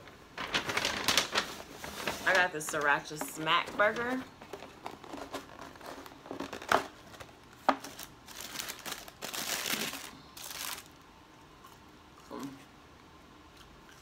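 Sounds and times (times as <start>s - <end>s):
food packaging crinkling: 0.3s - 11.1s.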